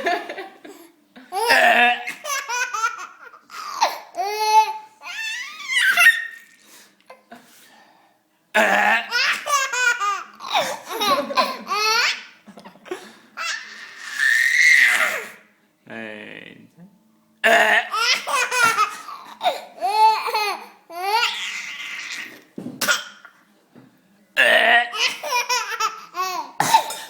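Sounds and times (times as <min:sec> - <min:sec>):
baby laughing: 0:01.3 - 0:06.6, 0:09.1 - 0:12.4, 0:17.9 - 0:23.2, 0:24.9 - 0:26.6.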